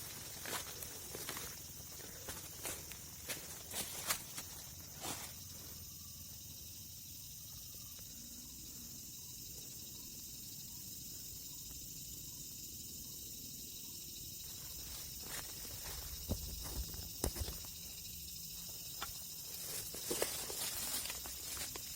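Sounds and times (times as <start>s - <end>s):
insects hissing: 0.0s - 21.9s.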